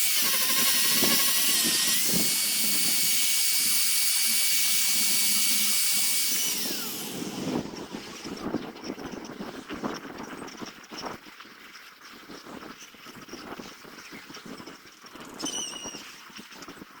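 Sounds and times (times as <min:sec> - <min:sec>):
power tool high whine: 0:00.0 - 0:08.4.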